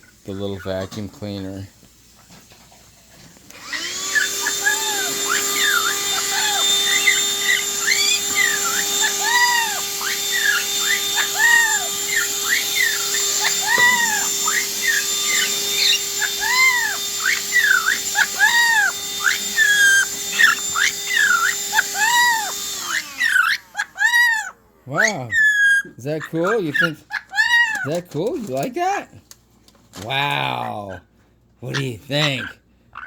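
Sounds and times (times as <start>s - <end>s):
vacuum cleaner motor whine: 3.5s - 24.8s
parrot whistling squawks: 3.6s - 28.0s.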